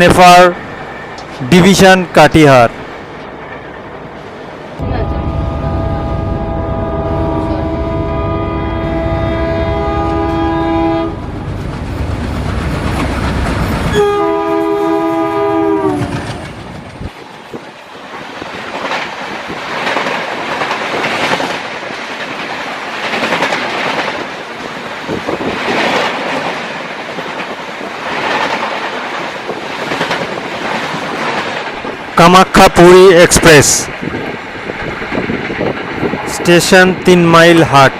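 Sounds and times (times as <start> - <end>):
diesel locomotive engine rumbling: 0.0 - 37.9
locomotive horn blasts: 4.8 - 11.2, 13.9 - 16.1
wheels clacking over rail joints: 15.4 - 32.8.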